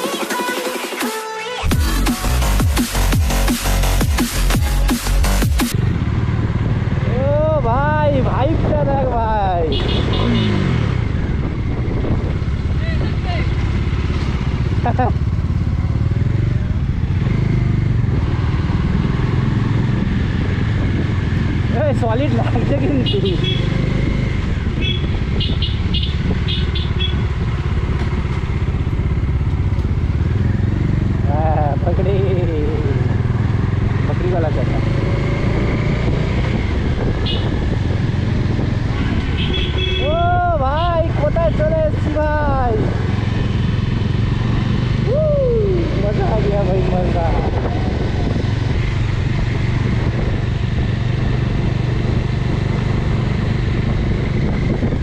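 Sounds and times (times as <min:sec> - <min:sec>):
motorcycle engine droning: 0:05.7 - 0:55.0.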